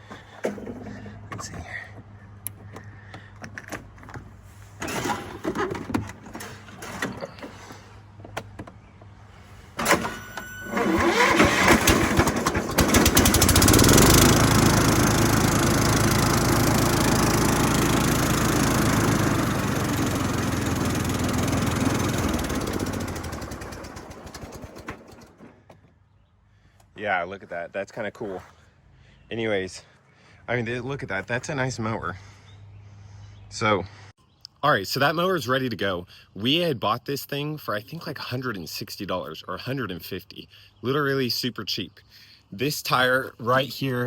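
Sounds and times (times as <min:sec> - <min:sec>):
lawn mower engine running: 0:00.1 - 0:01.4, 0:02.2 - 0:25.8.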